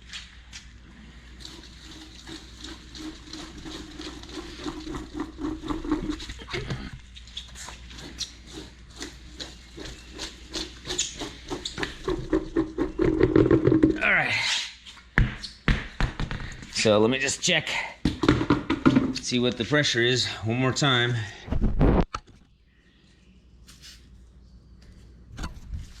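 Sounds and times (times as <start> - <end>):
tire knocking and rubbing on floor: 2.7 - 14.1, 15.1 - 16.7, 18.0 - 19.3.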